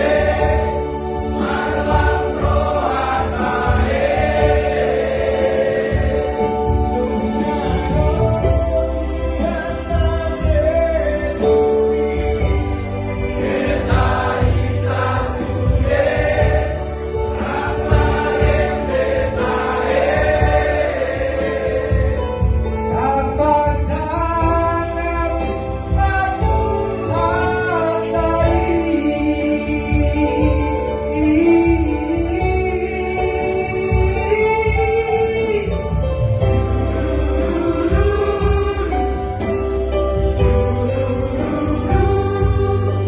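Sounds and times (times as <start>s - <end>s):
instrumental backing: 0.0s - 43.0s
vocal harmony singing: 0.0s - 43.0s.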